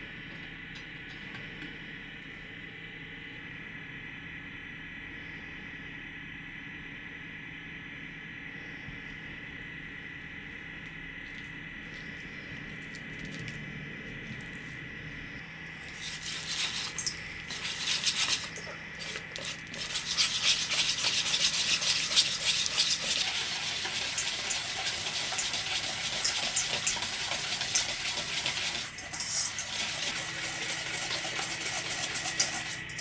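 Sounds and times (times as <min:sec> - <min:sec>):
scratchy rubbing and scraping: 0:15.8 - 0:33.0.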